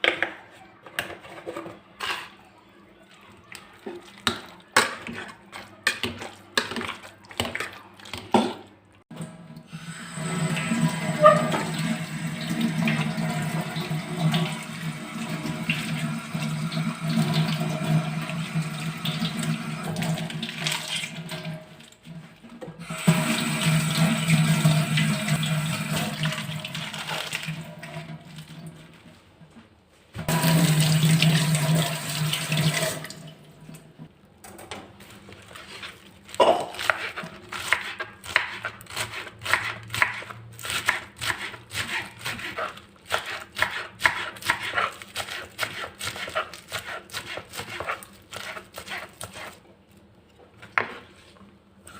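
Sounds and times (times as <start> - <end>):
tap water running into sink: 9.1 - 21.6, 22.8 - 28.7, 30.2 - 33.4.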